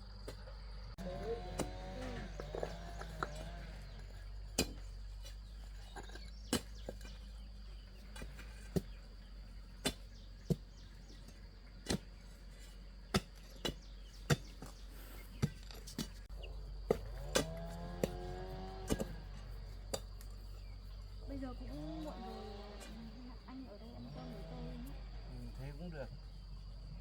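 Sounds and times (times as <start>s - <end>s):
digging tool striking ground: 1.0s - 21.1s.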